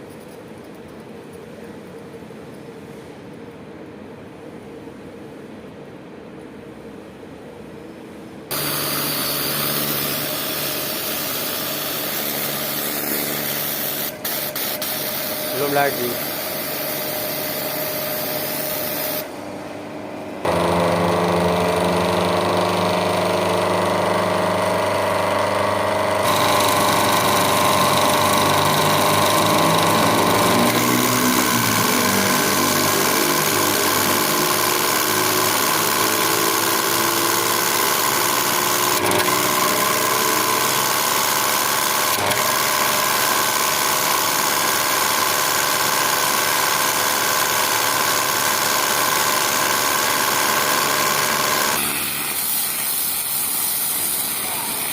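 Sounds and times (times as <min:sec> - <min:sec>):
pressure washer motor droning: 0:08.5 - 0:54.9.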